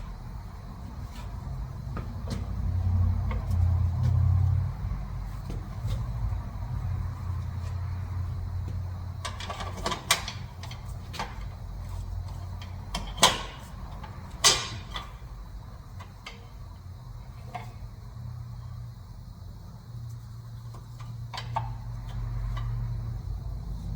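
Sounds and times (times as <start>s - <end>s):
tools clanking and knocking: 1.0s - 4.5s, 8.6s - 17.9s, 20.7s - 22.9s.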